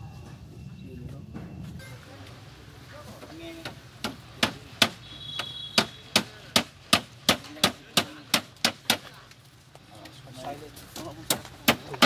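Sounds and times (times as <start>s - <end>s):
hammer blows: 4.0s - 9.0s.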